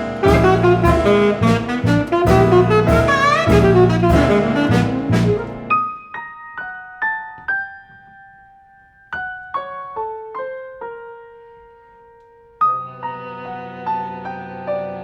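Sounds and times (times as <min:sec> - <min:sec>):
piano chord: 0:00.0 - 0:08.6
piano single high notes: 0:00.0 - 0:10.2.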